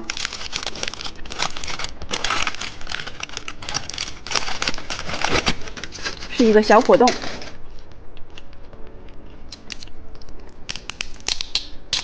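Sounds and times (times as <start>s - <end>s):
candy wrapper crinkling: 0.0s - 7.8s.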